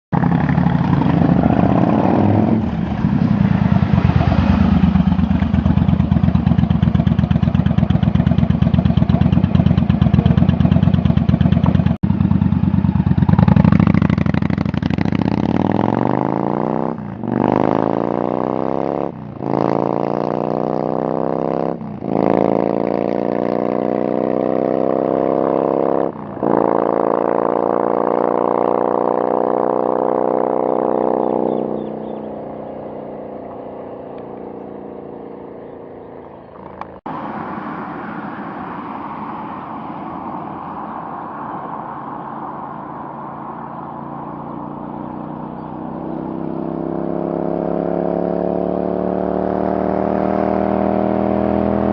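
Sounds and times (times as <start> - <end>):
motorcycle engine accelerating: 0.1 - 51.9.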